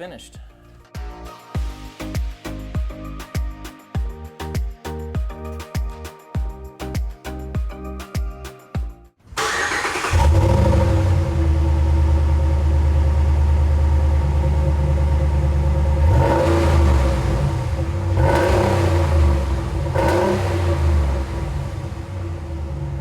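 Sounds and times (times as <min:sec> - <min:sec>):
engine idling and revving: 0:09.4 - 0:23.0.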